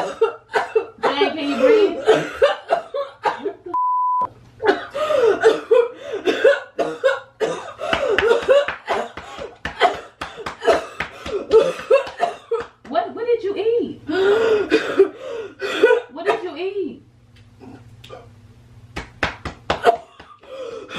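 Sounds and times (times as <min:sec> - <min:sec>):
person coughing and gasping: 0:00.0 - 0:03.6, 0:04.6 - 0:12.8, 0:14.3 - 0:16.5, 0:19.8 - 0:20.9
steady beep: 0:03.8 - 0:04.3.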